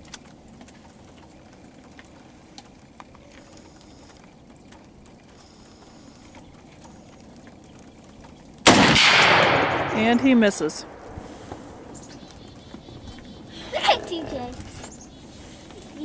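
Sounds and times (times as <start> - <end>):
faint ticks: 0.0 - 8.6.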